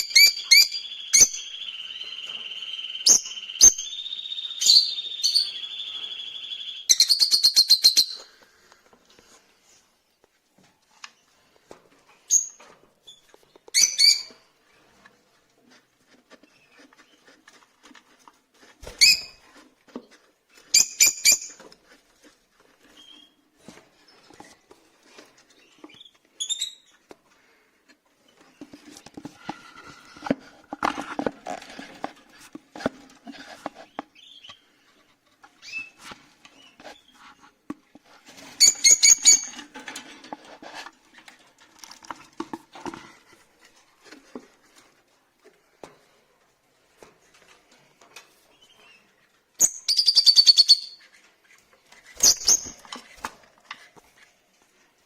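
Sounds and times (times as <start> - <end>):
lovebirds shrill calls: 0.0 - 8.2, 52.2 - 52.8
birds rustling and scratching: 8.2 - 49.6, 51.0 - 55.0.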